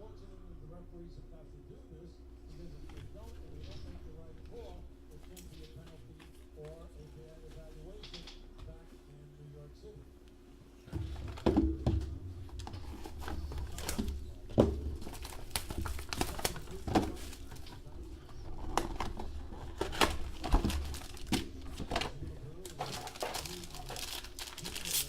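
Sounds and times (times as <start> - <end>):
plastic packaging crinkling: 12.5 - 25.0.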